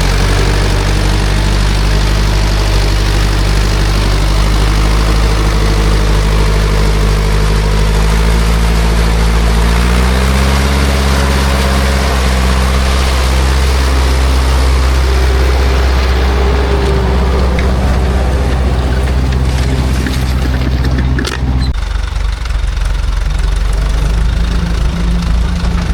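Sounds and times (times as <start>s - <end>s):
diesel tractor engine under load: 0.0s - 25.9s.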